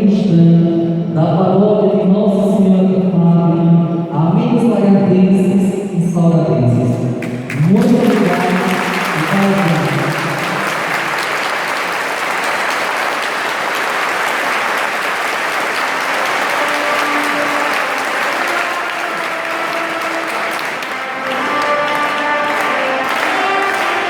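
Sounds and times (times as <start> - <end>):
crowd applauding: 7.2 - 24.0
instrumental music: 16.0 - 24.0.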